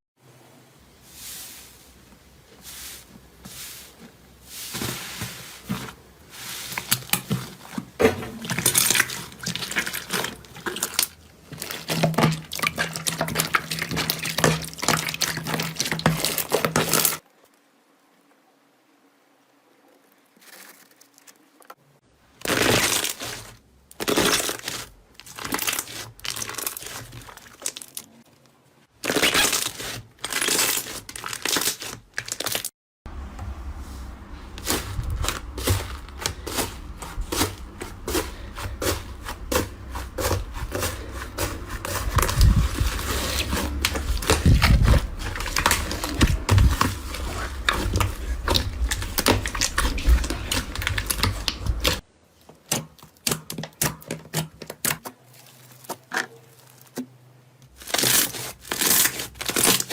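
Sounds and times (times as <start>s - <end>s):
slime squishing: 2.4s - 17.2s, 22.4s - 28.4s, 29.0s - 32.7s, 34.3s - 57.1s, 57.7s - 59.9s.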